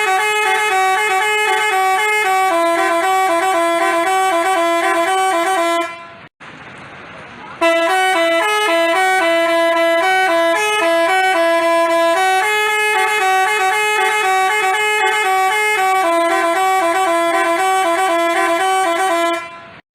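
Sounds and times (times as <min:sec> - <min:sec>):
musical horn playing a melody: 0:00.0 - 0:06.3, 0:07.6 - 0:19.8.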